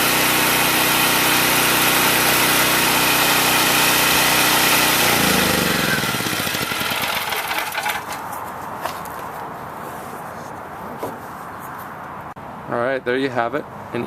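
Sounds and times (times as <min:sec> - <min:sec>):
generator engine running: 0:00.0 - 0:08.2.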